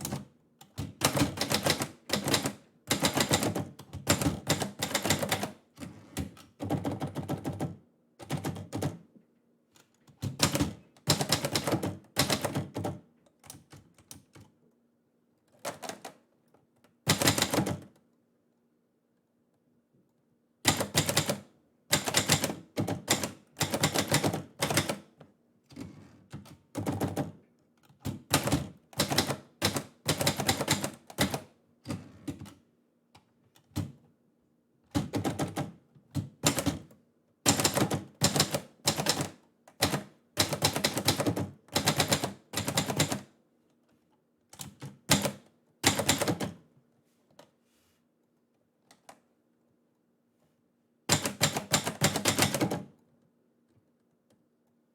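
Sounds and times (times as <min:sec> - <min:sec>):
manual typewriter keystrokes: 0:00.0 - 0:05.6, 0:10.1 - 0:14.5, 0:17.0 - 0:18.0, 0:20.7 - 0:25.1, 0:28.0 - 0:31.5, 0:34.9 - 0:36.9, 0:37.5 - 0:43.3, 0:44.6 - 0:46.6, 0:51.1 - 0:52.9.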